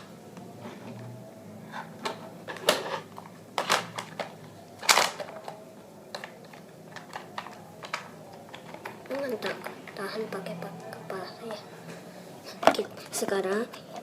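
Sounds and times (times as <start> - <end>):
plastic toy parts clicking: 3.6 - 9.6.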